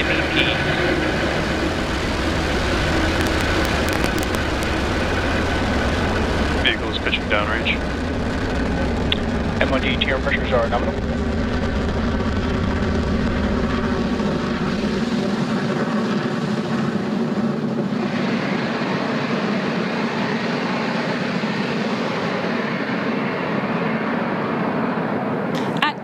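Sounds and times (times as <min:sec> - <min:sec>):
rocket engines roaring: 0:00.0 - 0:26.0.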